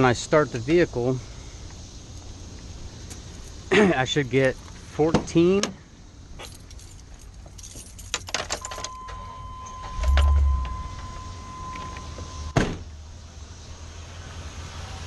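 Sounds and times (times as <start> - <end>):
keys jangling: 6.4 - 12.0
engine cranking and idling: 8.6 - 12.5
warning chime: 8.6 - 12.6.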